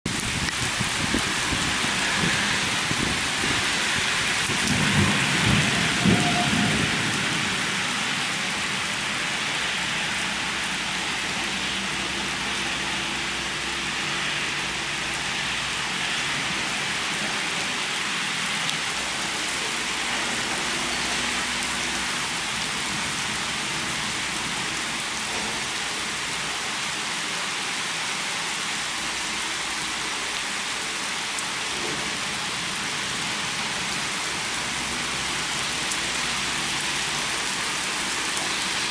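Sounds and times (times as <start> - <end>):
heavy rain falling: 0.0 - 38.9
low thunder peal: 4.4 - 7.8.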